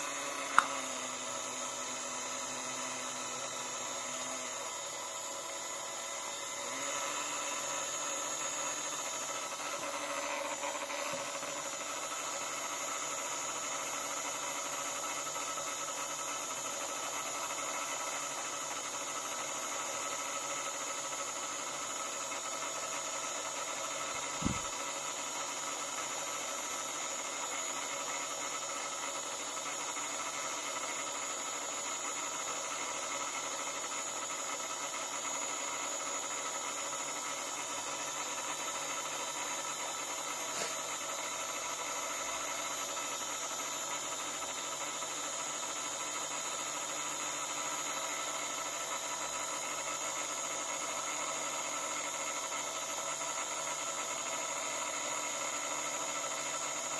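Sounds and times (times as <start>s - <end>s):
machine humming and whining: 0.0s - 56.9s
thump: 24.4s - 24.7s.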